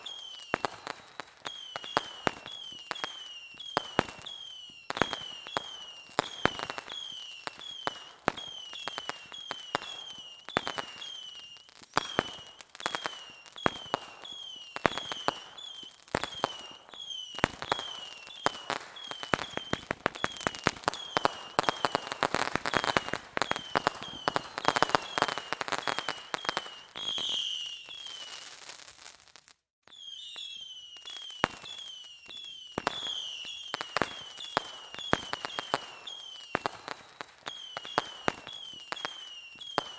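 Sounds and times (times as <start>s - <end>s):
fireworks bangs and crackles: 0.0s - 39.9s.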